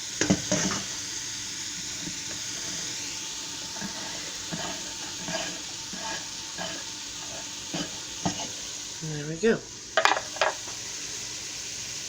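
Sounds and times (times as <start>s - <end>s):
onion sizzling in a pan: 0.0s - 12.0s
utensil knocking against pan: 10.0s - 10.6s.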